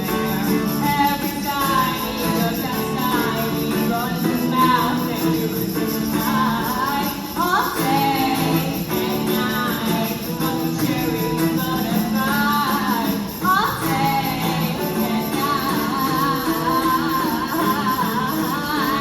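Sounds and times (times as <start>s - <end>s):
guitar accompaniment: 0.0s - 19.0s
woman singing: 0.0s - 19.0s.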